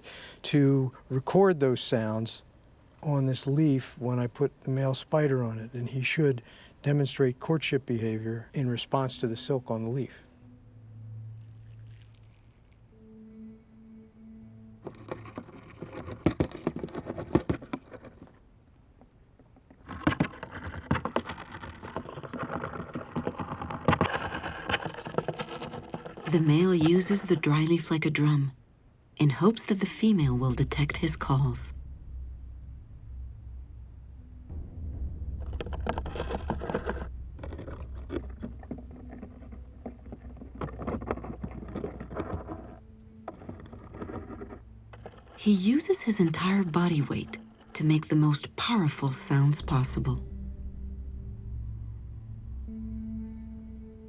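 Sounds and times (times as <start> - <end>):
low hum: 0.0 - 54.0
spider drumming on a dry leaf: 11.4 - 12.8, 35.4 - 45.4.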